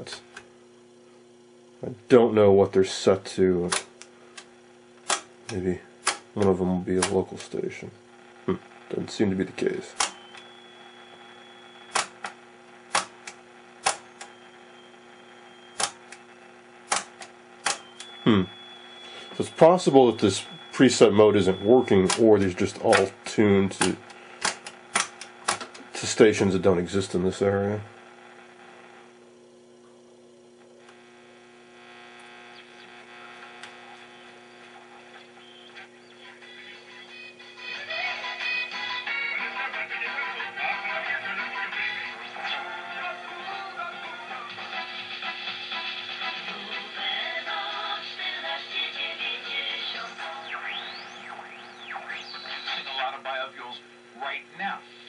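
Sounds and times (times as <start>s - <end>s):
radio hum and hiss: 0.0s - 55.0s
radio button clicks: 3.7s - 7.5s, 11.9s - 14.3s, 15.8s - 16.2s, 16.9s - 18.1s, 23.8s - 25.9s.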